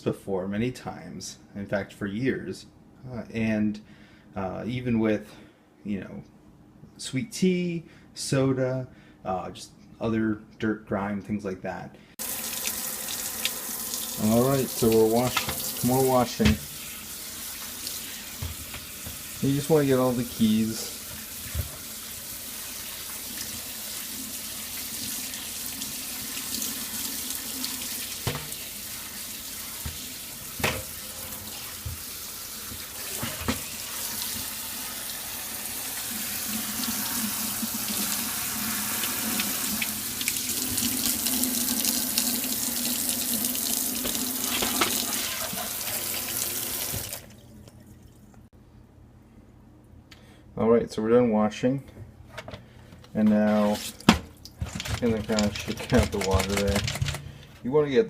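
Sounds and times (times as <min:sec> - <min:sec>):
tap running into a sink: 0:14.5 - 0:16.8, 0:18.3 - 0:19.3, 0:28.2 - 0:28.6, 0:44.0 - 0:47.2.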